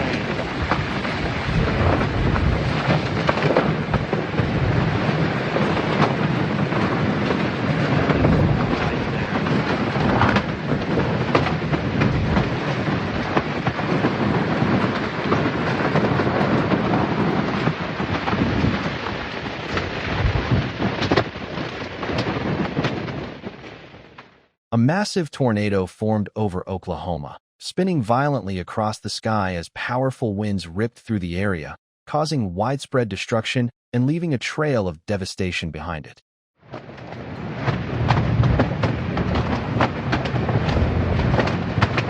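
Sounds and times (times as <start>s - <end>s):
low rumbling: 0.0s - 13.4s, 37.2s - 42.0s
rain: 0.0s - 24.5s, 36.7s - 42.0s.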